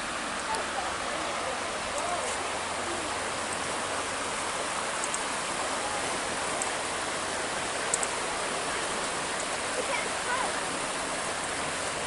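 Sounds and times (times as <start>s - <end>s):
river water rushing: 0.0s - 12.0s
faint ticks: 4.9s - 5.3s, 7.9s - 8.2s.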